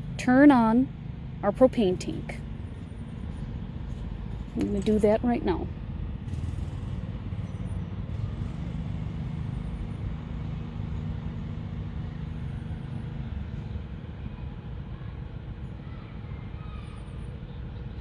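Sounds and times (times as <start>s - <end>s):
low background rumble: 0.0s - 17.2s.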